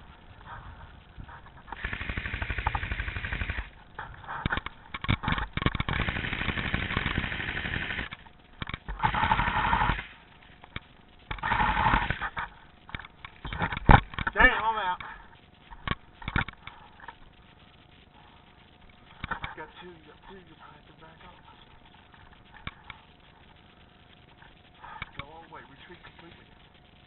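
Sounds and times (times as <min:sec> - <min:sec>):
airsoft guns firing full auto: 0:01.7 - 0:03.7, 0:05.2 - 0:08.2, 0:08.9 - 0:10.2, 0:11.3 - 0:12.4.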